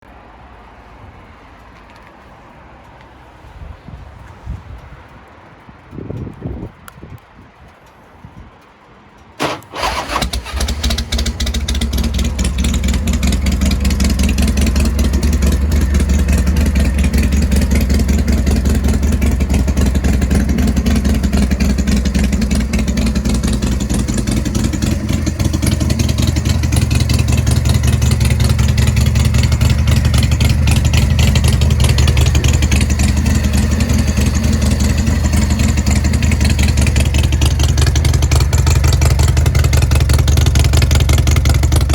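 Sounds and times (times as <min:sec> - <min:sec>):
motorcycle starter cranking: 0:09.4 - 0:39.0
motorcycle engine idling loudly: 0:10.8 - 0:41.9.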